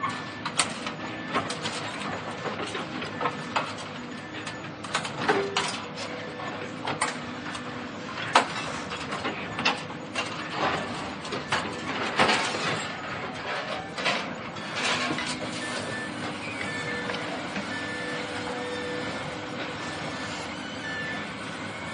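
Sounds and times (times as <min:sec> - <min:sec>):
steady mechanical hum: 0:00.0 - 0:21.9
metallic clanks and scraping: 0:08.2 - 0:15.9.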